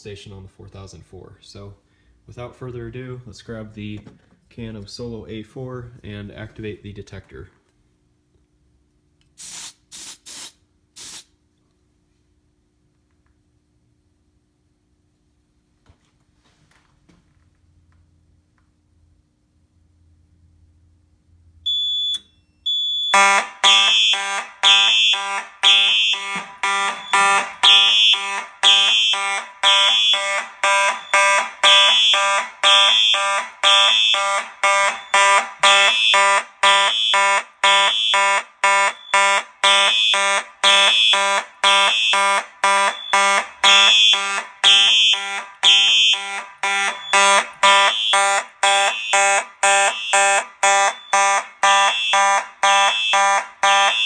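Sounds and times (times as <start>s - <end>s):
electronic fire alarm horn: 21.7s - 54.0s
mechanical fire alarm horn: 21.7s - 54.0s.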